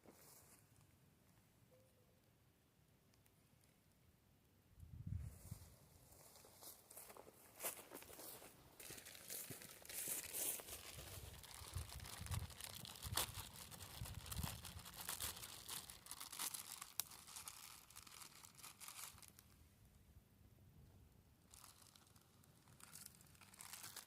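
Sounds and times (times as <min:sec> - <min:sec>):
dry material crinkling and tearing: 0:08.8 - 0:19.5, 0:21.5 - 0:24.0.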